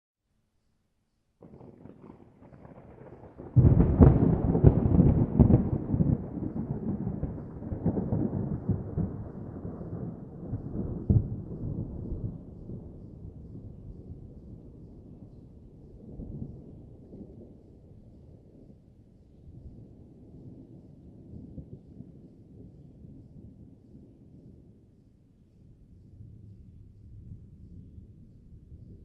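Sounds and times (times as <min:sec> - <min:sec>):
thunder rumbling and cracking: 0:01.4 - 0:18.9.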